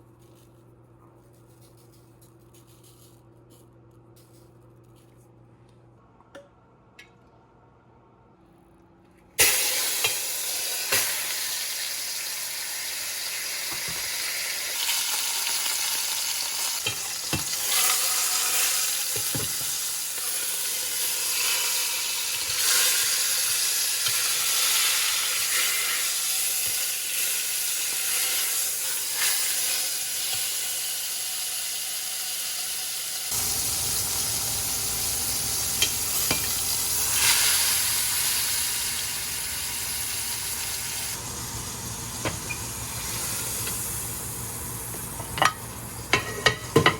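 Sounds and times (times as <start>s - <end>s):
food sizzling in hot oil: 9.4s - 46.9s.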